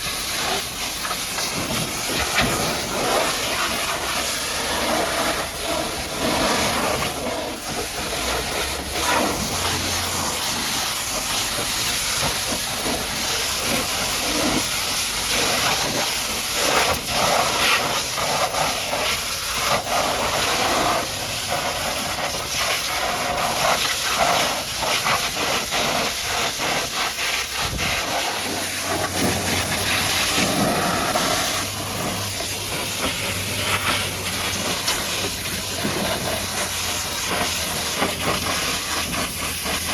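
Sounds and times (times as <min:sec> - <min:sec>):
pressure washer spraying: 0:00.0 - 0:39.9
water spattering on surfaces: 0:00.0 - 0:39.9.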